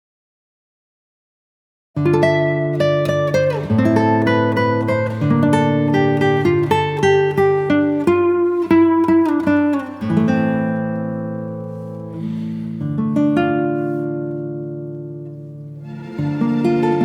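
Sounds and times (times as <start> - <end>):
acoustic guitar picking: 2.0 - 17.0.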